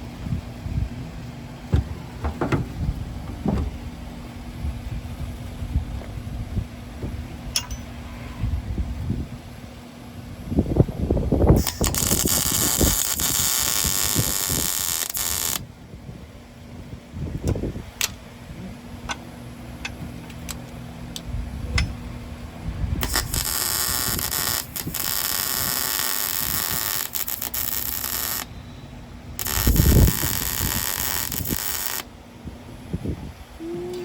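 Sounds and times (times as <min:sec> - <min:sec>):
dull knocks: 0:01.7 - 0:03.8
welder crackling: 0:11.6 - 0:15.6, 0:23.0 - 0:28.5, 0:29.4 - 0:32.1.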